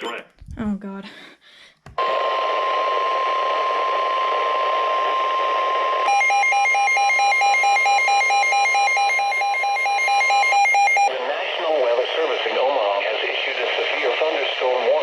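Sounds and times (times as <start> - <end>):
high-pitched warning tone: 6.1 - 11.1
rapid electronic beeping: 6.1 - 11.1.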